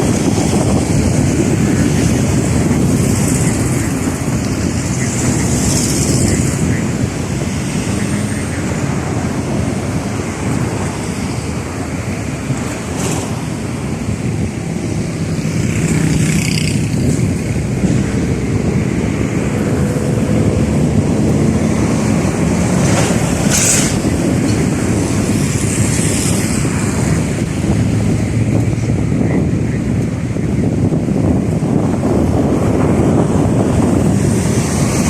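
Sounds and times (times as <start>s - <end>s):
jet engines at takeoff: 0.0s - 35.0s
wind buffeting microphone: 0.0s - 35.0s.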